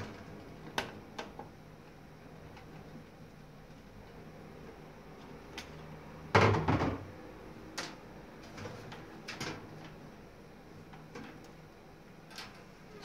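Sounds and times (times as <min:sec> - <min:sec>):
plastic cover knock and rattle: 0:06.4 - 0:07.0.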